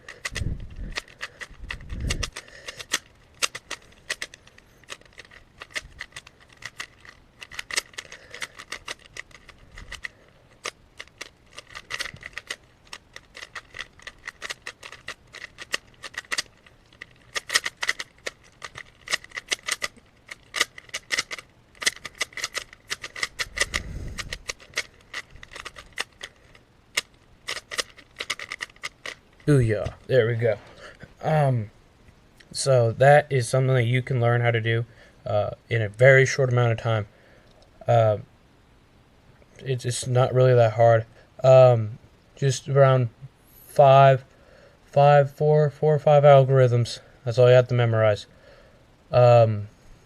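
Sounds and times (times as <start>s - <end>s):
plastic puzzle cube clicking: 0.0s - 29.6s.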